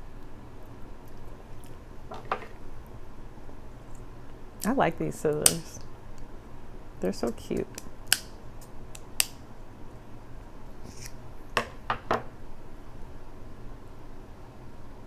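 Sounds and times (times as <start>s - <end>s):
scissors snipping crab shell: 5.4s - 5.8s, 7.2s - 9.4s.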